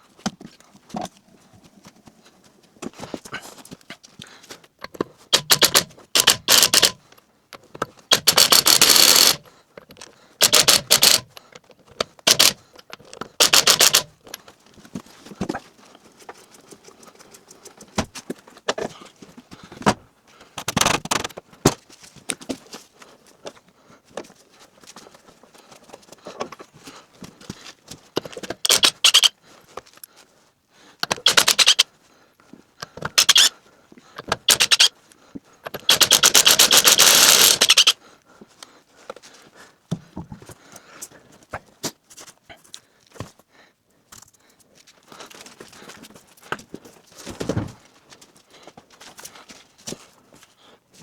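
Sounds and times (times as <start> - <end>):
impact wrench rattling: 4.9 - 7.0, 7.8 - 11.4, 12.0 - 14.1, 28.4 - 29.3, 31.0 - 31.8, 32.9 - 33.5, 34.2 - 34.9, 35.7 - 38.0.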